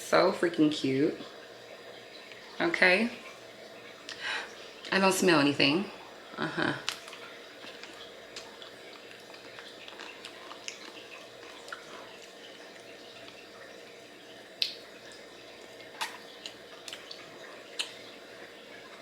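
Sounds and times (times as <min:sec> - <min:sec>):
mouth clicks and smacks eating: 0:06.8 - 0:13.4, 0:15.9 - 0:18.0.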